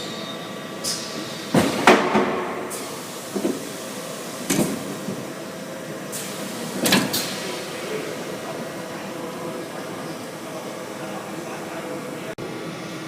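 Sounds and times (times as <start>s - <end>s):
mechanical knocks and clanks: 0.9s - 3.6s, 4.4s - 5.2s.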